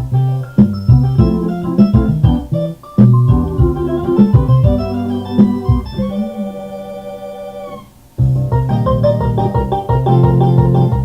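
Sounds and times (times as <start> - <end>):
synthesized ringtone melody: 0.6 - 7.8.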